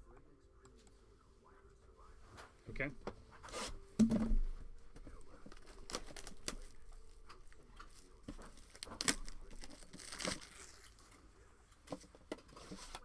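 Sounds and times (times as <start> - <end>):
plastic wrapping tearing and crinkling: 5.1 - 11.2.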